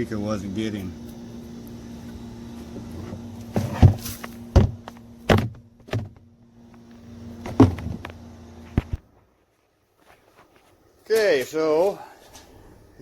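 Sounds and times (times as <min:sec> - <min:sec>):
mechanical hum: 0:00.0 - 0:13.0
sharp knocks and thunks: 0:03.5 - 0:06.2, 0:07.4 - 0:08.0.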